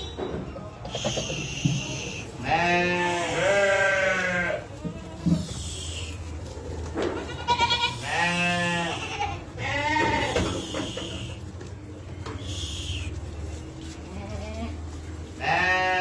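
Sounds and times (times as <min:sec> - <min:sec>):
livestock bleating: 0:00.9 - 0:04.7, 0:07.2 - 0:11.4, 0:14.1 - 0:16.0.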